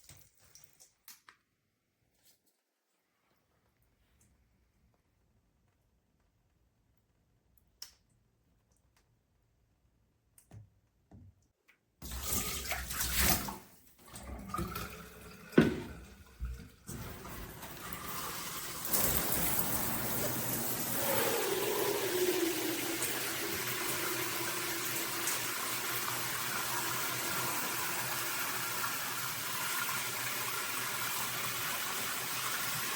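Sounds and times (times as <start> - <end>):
shower head spraying water: 16.9 - 29.0.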